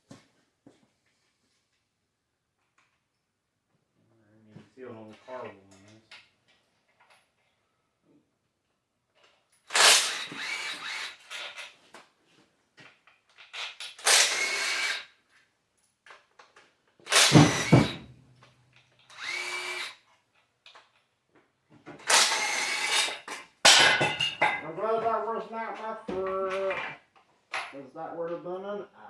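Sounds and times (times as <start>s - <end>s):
power tool whirring: 9.7s - 11.6s, 14.0s - 15.1s, 17.1s - 18.1s, 19.1s - 20.0s, 22.0s - 23.3s.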